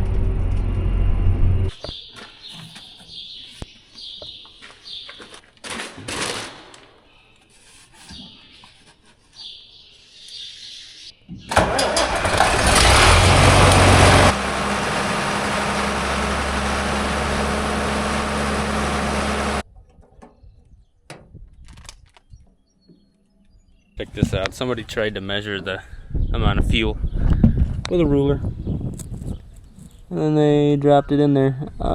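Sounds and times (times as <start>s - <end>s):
engine cranking and running: 11.5s - 19.6s.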